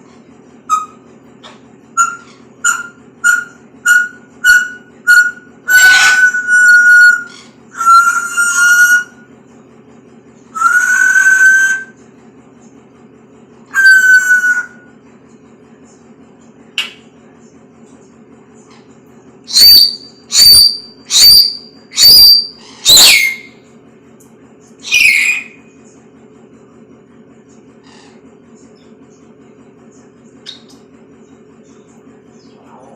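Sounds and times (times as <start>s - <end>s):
pet bird whistling: 0.7s - 9.3s, 10.6s - 12.0s, 13.7s - 14.9s, 19.5s - 23.6s, 24.8s - 25.7s, 30.4s - 30.8s.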